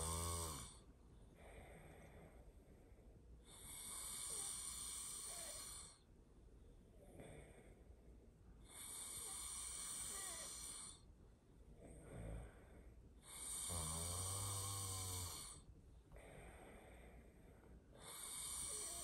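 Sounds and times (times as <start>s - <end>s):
person snoring loudly: 0.0s - 0.8s, 3.6s - 5.9s, 8.7s - 11.0s, 13.3s - 15.6s, 18.0s - 19.0s.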